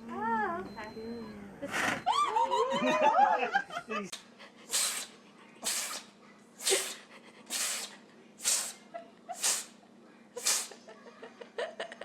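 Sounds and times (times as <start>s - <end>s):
animal hissing through nose: 4.7s - 8.8s, 9.4s - 9.8s, 10.4s - 10.8s.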